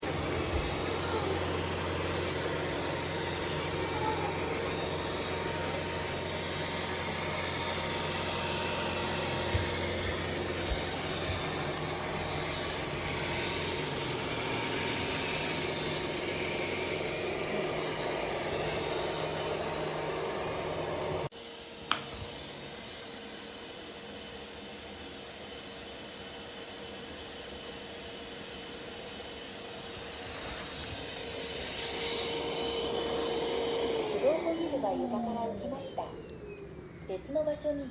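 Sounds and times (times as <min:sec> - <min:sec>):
robot vacuum suction whir: 0:00.0 - 0:21.3, 0:29.0 - 0:37.2.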